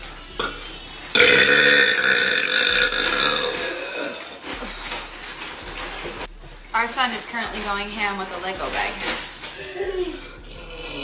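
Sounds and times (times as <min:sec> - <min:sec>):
woman burping: 0:01.2 - 0:04.7.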